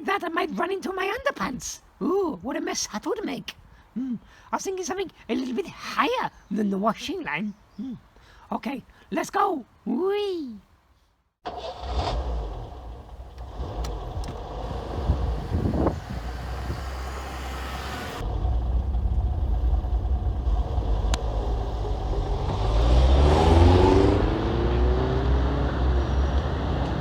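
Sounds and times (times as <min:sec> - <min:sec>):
road noise: 0:11.4 - 0:27.0
vehicle engine running: 0:12.5 - 0:27.0.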